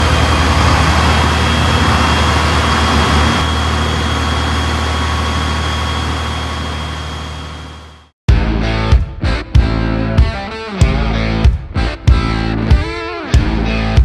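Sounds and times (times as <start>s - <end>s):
diesel engine humming: 0.0s - 8.9s
high whine: 0.0s - 14.0s.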